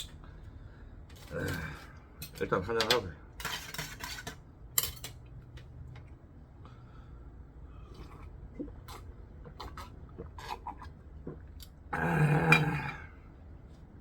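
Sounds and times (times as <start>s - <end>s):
person gasping after swallowing: 12.0s - 13.2s.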